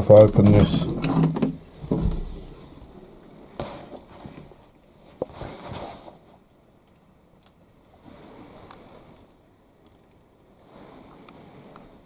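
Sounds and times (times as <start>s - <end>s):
scraping rustle: 0.0s - 3.0s.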